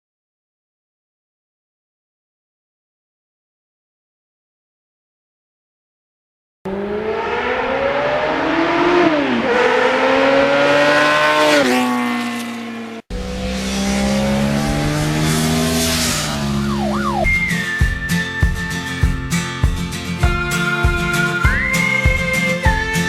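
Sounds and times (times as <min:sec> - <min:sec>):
motorcycle engine accelerating: 0:06.7 - 0:23.0.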